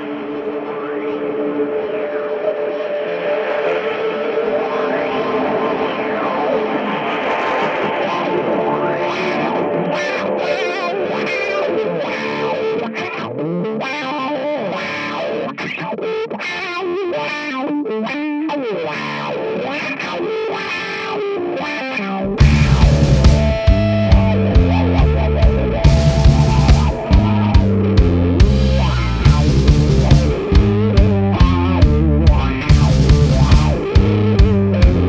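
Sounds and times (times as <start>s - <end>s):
distorted electric guitar: 0.0s - 35.0s
bass-heavy music: 22.2s - 35.0s.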